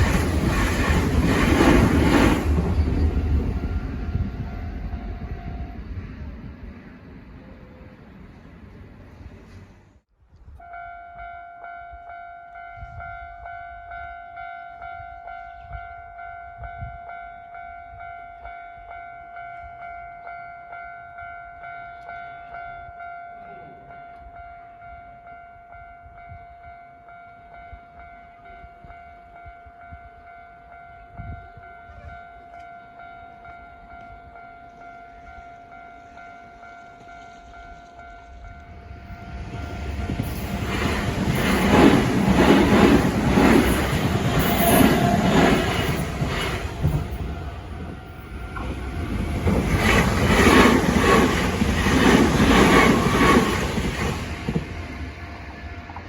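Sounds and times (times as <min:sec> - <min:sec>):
approaching train rumble: 0:00.0 - 0:10.1, 0:27.6 - 0:56.0
level crossing warning bell: 0:10.6 - 0:54.4.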